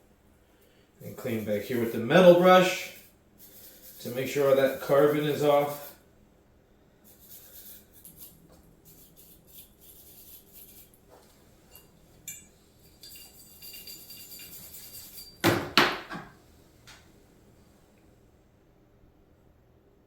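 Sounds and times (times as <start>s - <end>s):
wire brush scratching metal: 1.0s - 6.0s, 7.1s - 11.0s, 12.8s - 15.4s.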